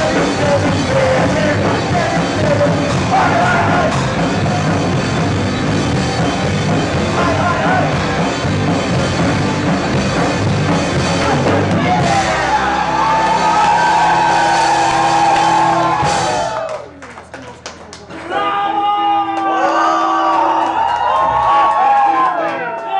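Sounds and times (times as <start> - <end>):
live rock band playing: 0.0 - 16.6
drums: 0.0 - 17.0.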